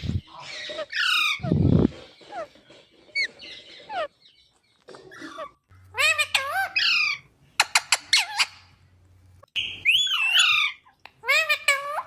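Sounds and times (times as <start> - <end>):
parakeet chattering calls: 0.0 - 4.5, 5.1 - 8.8
parakeet harsh squawk: 5.1 - 8.7, 9.8 - 12.0.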